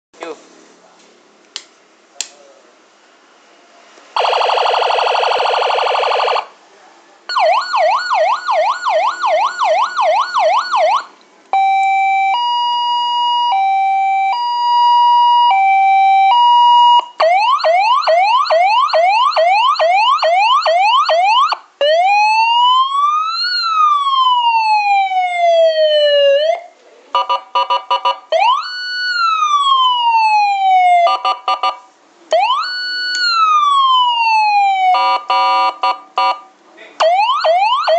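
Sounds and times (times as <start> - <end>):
electronic police siren: 4.2 - 6.5, 7.3 - 37.9.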